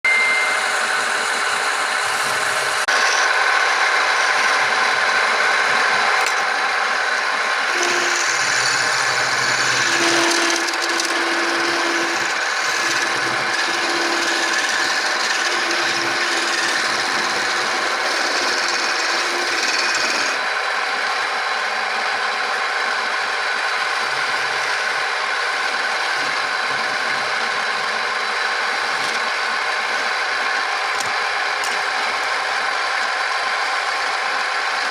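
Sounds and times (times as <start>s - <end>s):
wood lathe running: 0.6s - 34.9s
tool rasping on wood: 2.0s - 5.1s, 7.6s - 20.4s.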